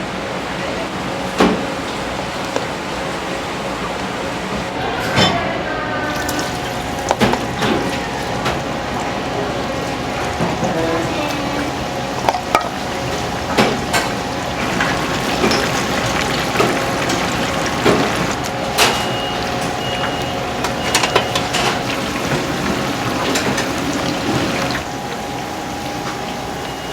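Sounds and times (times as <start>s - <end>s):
machine hum: 0.0s - 26.9s
utensils and dishes clattering: 4.9s - 24.8s
running water: 6.0s - 26.9s.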